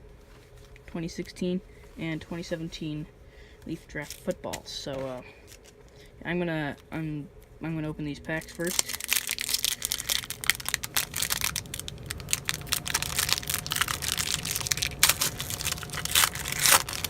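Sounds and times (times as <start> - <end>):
wrapper tearing and crinkling: 4.0 - 4.4, 5.4 - 5.8, 8.4 - 17.0.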